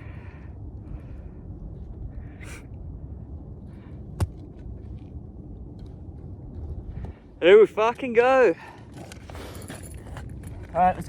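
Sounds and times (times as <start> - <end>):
low rumbling microphone noise: 0.0 - 7.5.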